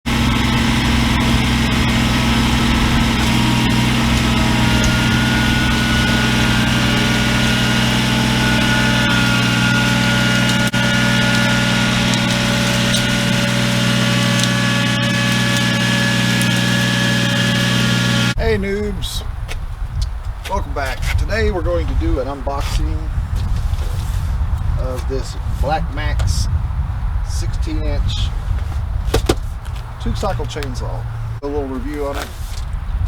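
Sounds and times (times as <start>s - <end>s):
chainsaw engine idling: 0.0s - 18.4s.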